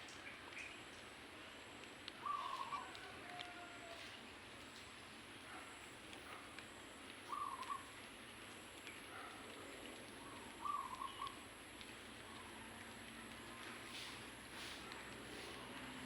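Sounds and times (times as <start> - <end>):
bird calling: 2.2 - 3.4, 7.2 - 8.0, 10.2 - 11.4.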